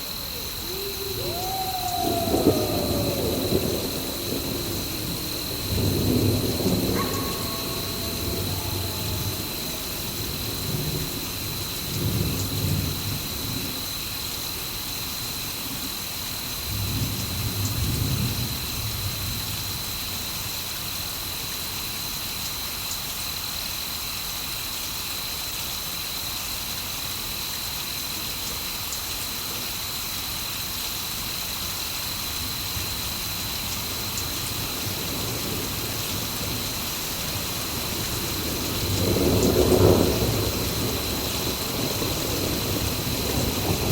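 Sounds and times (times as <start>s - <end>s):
thunder rumbling: 0.0s - 14.0s, 34.3s - 43.9s
heavy rain hissing: 0.0s - 43.9s.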